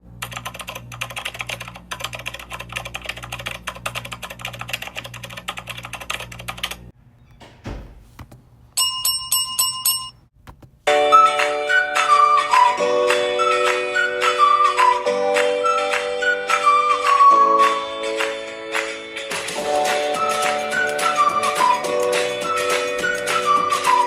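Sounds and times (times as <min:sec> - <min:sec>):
low thud: 0:07.4 - 0:08.2
bell ringing: 0:08.8 - 0:10.3
music: 0:10.9 - 0:24.0.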